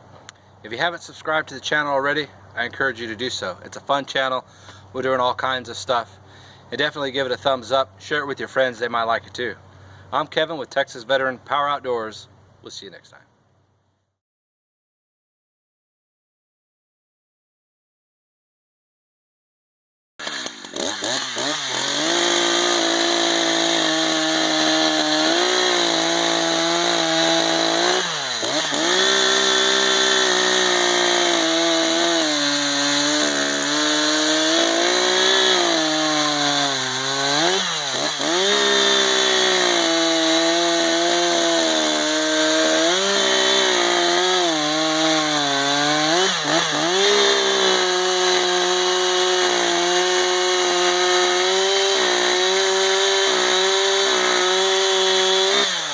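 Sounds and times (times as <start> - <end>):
chainsaw cutting wood: 20.2 - 55.9.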